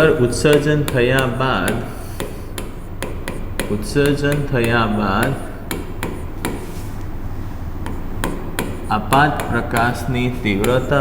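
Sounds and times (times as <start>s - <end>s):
man speaking: 0.0s - 2.0s, 3.7s - 5.6s, 8.9s - 11.0s
sharp knocks or taps: 0.0s - 6.8s, 7.8s - 11.0s.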